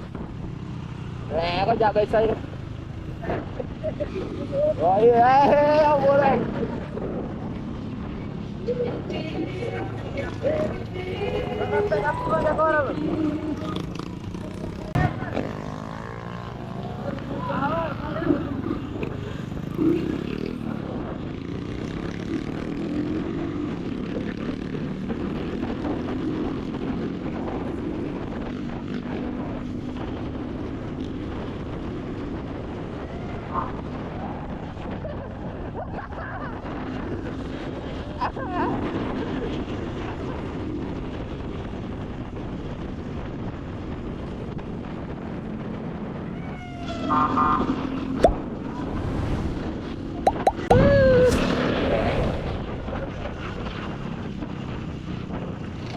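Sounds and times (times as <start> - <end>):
motorcycle engine running: 0.0 - 34.9.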